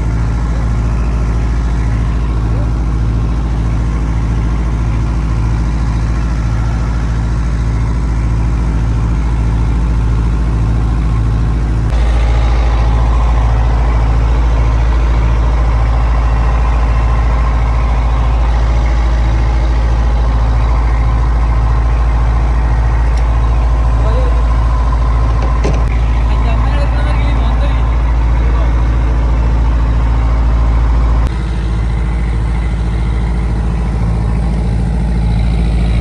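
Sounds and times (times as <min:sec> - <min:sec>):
boat engine throbbing: 0:00.0 - 0:36.0.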